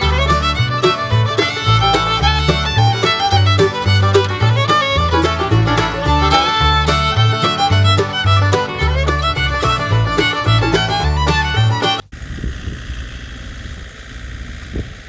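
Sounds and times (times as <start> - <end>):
bouncing bass line: 0.0 - 12.0
upbeat fiddle tune: 0.0 - 12.1.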